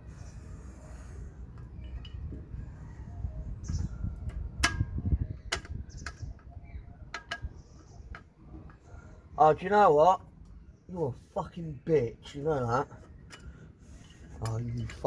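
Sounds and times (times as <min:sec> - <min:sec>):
metal clicks and clinks from tools: 0:13.3 - 0:15.0.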